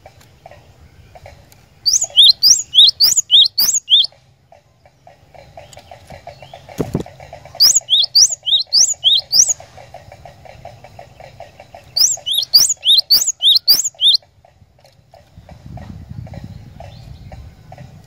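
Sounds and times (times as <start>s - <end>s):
bird singing ringing song: 0.4s - 6.8s, 7.5s - 14.2s
faint fast pulsing: 1.9s - 4.1s, 7.3s - 10.2s, 11.8s - 14.2s.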